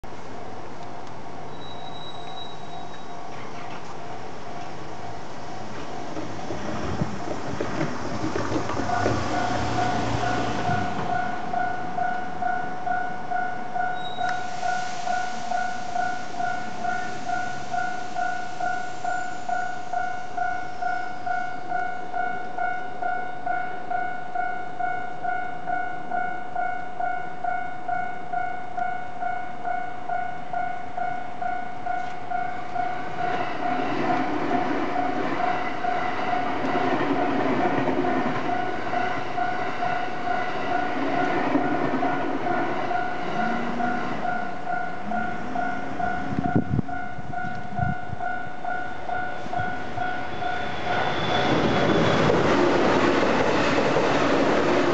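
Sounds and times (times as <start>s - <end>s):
train passing rumble: 0.1s - 26.7s, 27.4s - 54.9s
rising and falling tones: 42.0s - 47.1s
level-crossing bell ringing: 42.9s - 51.8s.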